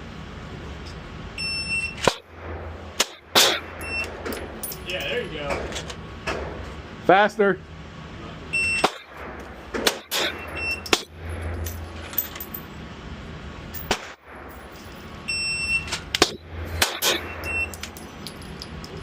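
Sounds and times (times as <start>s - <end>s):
pistol shots cracking: 2.0s - 4.6s, 8.8s - 11.6s, 13.8s - 14.5s, 16.1s - 18.0s
electronic shot timer beep: 17.2s - 17.8s.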